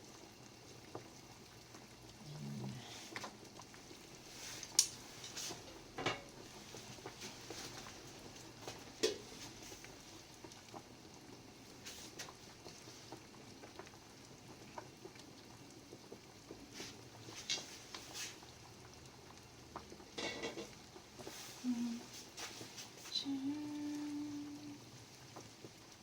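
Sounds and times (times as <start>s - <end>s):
water simmering in a pot: 0.0s - 26.0s
pot clinking: 20.2s - 20.8s.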